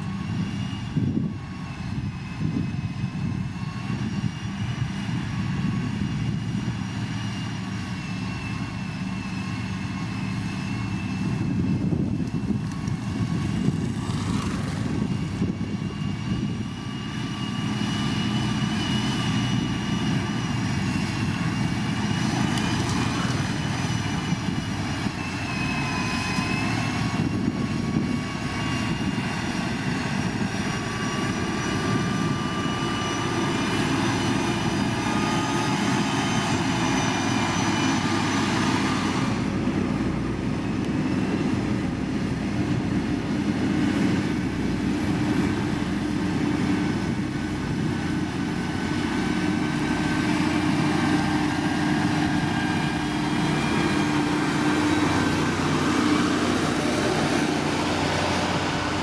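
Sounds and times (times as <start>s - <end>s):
faint high whining: 0.0s - 42.0s
diesel engine running: 0.0s - 59.0s.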